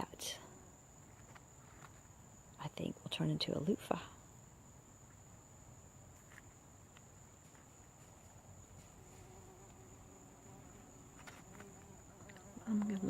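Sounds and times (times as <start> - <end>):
bee buzzing: 8.8 - 13.0.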